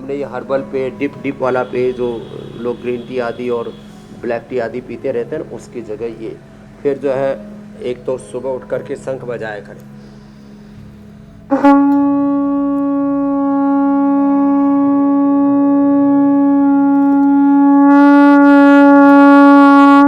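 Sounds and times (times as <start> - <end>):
conch shell blown: 1.4 - 4.3, 11.5 - 20.0.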